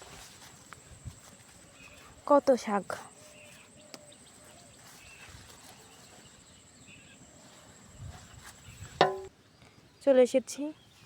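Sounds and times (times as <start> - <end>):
faint bird chirps: 1.1 - 11.0
soft low thumps: 8.9 - 9.3.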